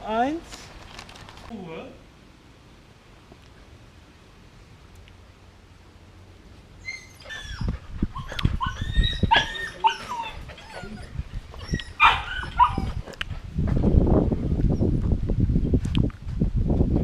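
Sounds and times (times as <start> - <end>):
puppies yipping and whining: 6.8 - 13.2.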